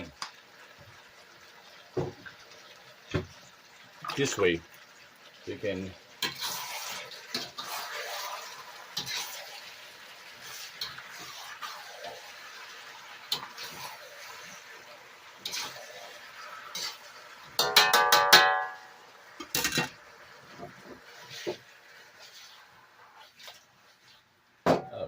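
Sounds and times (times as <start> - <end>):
metal spatula scraping a wok: 6.2 - 9.6, 15.4 - 15.9, 16.7 - 18.8, 22.2 - 24.2
metallic ringing: 17.6 - 19.0.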